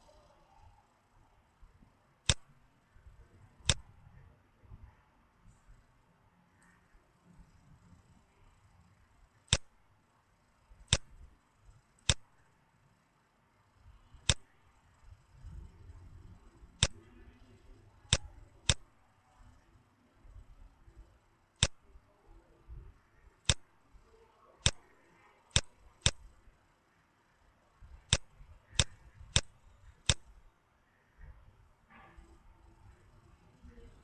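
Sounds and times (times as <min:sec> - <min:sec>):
faint room noise: 0:00.0 - 0:34.0
computer mouse button clicks: 0:02.3 - 0:02.5, 0:03.6 - 0:03.9, 0:09.5 - 0:09.7, 0:10.9 - 0:11.2, 0:12.0 - 0:12.2, 0:14.2 - 0:14.4, 0:18.1 - 0:18.9, 0:23.4 - 0:23.6, 0:24.6 - 0:26.4, 0:28.0 - 0:30.4.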